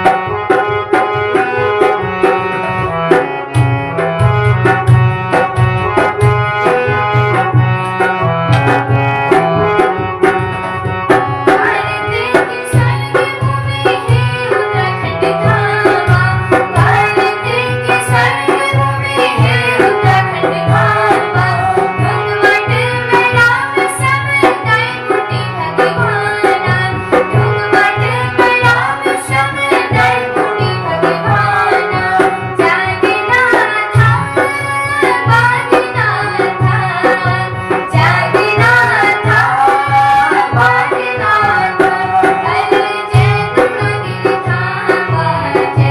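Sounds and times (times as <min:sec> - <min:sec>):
melody instruments: 0:00.0 - 0:23.1
tabla and drum rhythm: 0:00.0 - 0:45.9.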